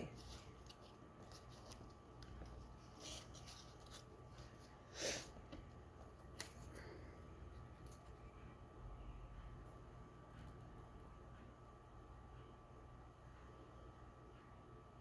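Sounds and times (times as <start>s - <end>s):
paper rustling: 0.0s - 4.8s.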